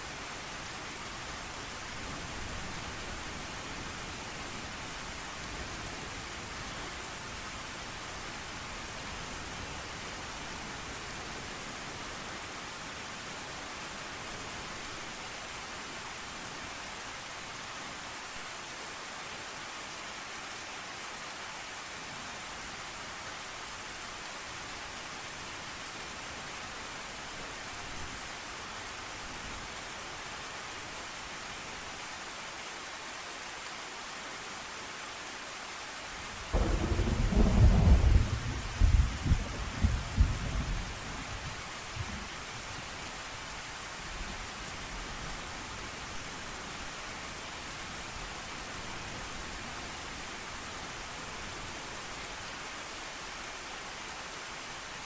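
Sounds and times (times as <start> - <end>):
rain hissing: 36.0 - 54.9
thunder clap rumbling: 36.6 - 40.4.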